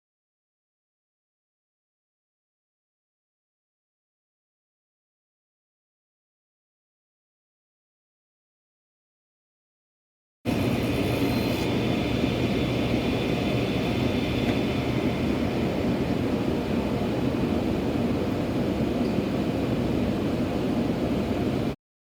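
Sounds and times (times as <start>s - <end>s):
table saw running: 10.5s - 17.5s
dust collector running: 10.5s - 21.6s.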